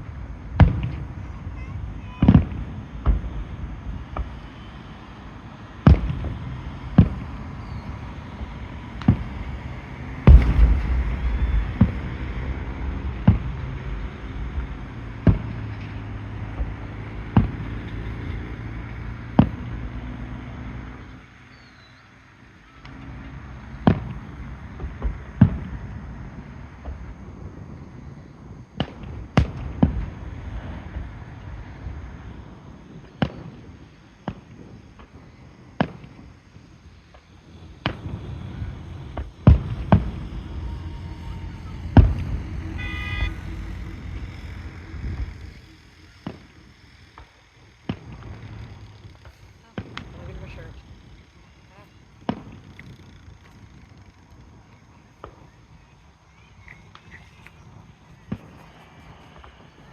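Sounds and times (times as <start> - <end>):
fireworks bursting: 0.0 - 21.0, 22.7 - 59.9
low engine drone: 2.7 - 21.4, 36.9 - 54.8, 56.0 - 59.9.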